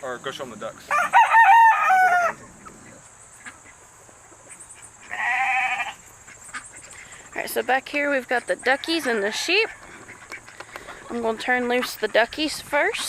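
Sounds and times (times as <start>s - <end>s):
sheep bleating: 5.1s - 6.0s.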